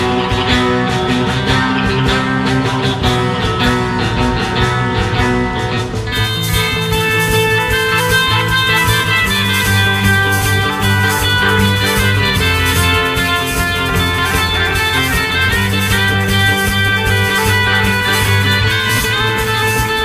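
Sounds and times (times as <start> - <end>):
background music with guitar: 0.0 - 20.0.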